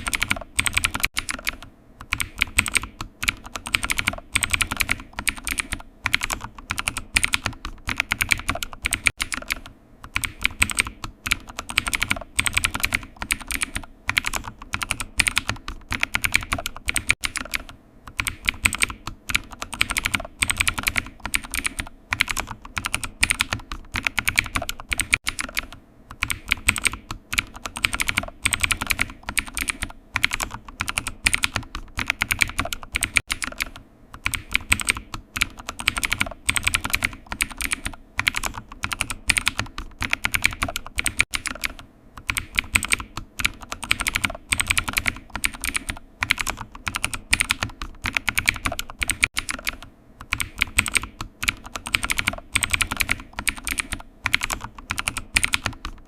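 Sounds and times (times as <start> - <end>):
typing on computer keyboard: 0.0 - 56.0.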